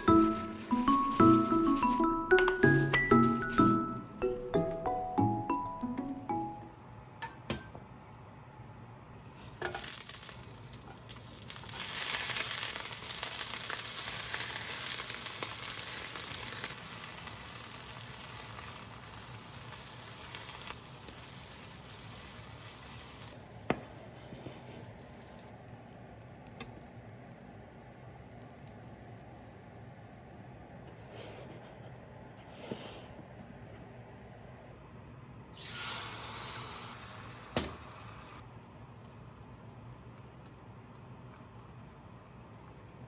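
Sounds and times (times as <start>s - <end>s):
food sizzling in a frying pan: 9.2s - 23.5s, 35.6s - 38.4s.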